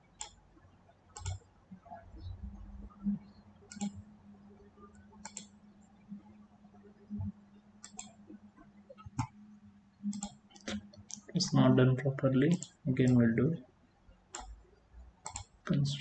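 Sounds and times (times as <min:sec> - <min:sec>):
faint low hum: 0:00.0 - 0:16.0
computer mouse clicking: 0:00.2 - 0:00.4, 0:01.2 - 0:01.4, 0:03.7 - 0:04.1, 0:05.2 - 0:05.6, 0:07.8 - 0:08.2, 0:09.0 - 0:09.4, 0:10.1 - 0:11.3, 0:12.4 - 0:13.2, 0:14.3 - 0:14.6, 0:15.2 - 0:15.7.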